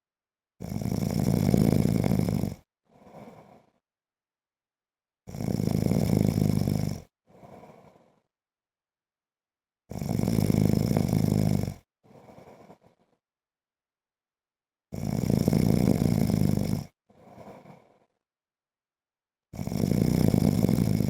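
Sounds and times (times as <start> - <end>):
man snoring: 0.6 - 3.8, 5.3 - 8.2, 9.9 - 13.1, 14.9 - 18.1, 19.6 - 21.0
soft breath: 2.8 - 3.8, 7.2 - 8.4, 12.0 - 13.2, 17.1 - 18.2.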